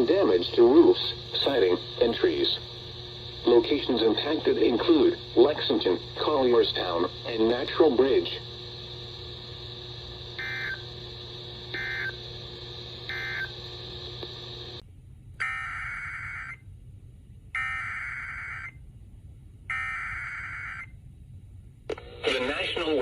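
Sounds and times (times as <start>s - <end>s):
steady radio hum: 0.0s - 14.8s, 21.9s - 23.0s
harsh digital data bursts: 10.4s - 10.9s, 11.7s - 12.2s, 13.1s - 13.6s
screeching data bursts: 10.4s - 11.0s, 11.7s - 12.4s, 13.0s - 13.6s.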